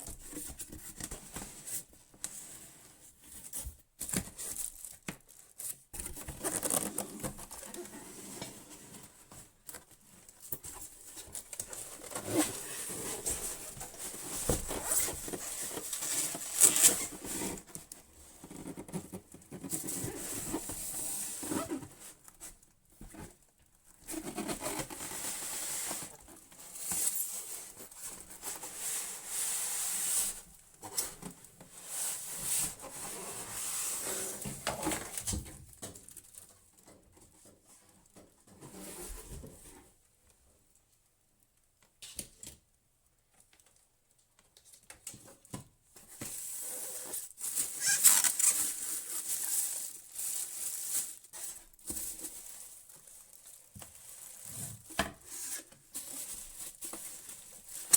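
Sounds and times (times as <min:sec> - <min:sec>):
packaging rustling and crinkling: 0:03.5 - 0:08.2, 0:09.0 - 0:36.8, 0:46.0 - 0:57.9.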